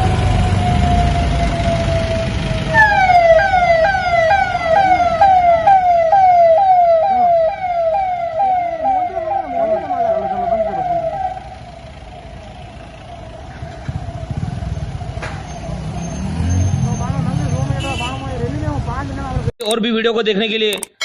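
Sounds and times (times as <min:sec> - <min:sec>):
police siren yelp: 0:00.0 - 0:16.0
faint warbling siren tone: 0:00.0 - 0:16.7.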